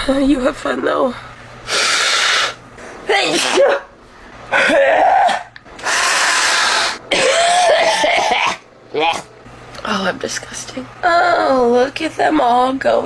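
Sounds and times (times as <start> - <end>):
person coughing and hacking: 3.2 - 3.9, 4.5 - 5.5, 7.0 - 9.3.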